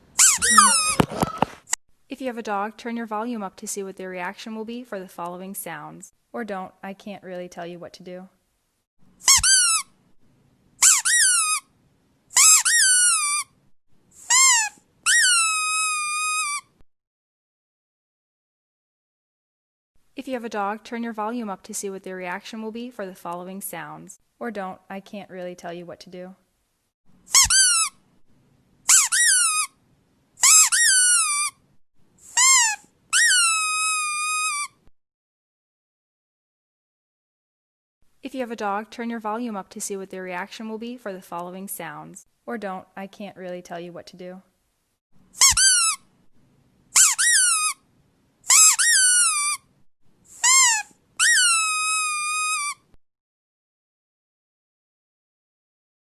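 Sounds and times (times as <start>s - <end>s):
high-pitched squeaks: 0.2s - 1.7s, 32.3s - 34.7s, 45.4s - 46.0s, 47.0s - 47.8s, 48.5s - 49.6s, 50.4s - 52.8s.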